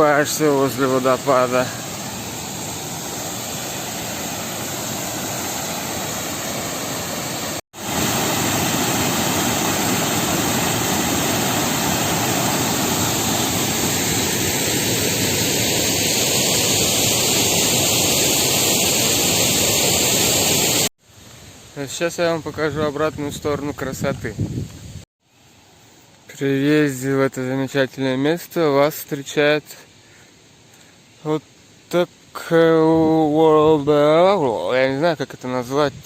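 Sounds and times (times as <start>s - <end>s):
waterfall rushing: 0.0s - 20.9s.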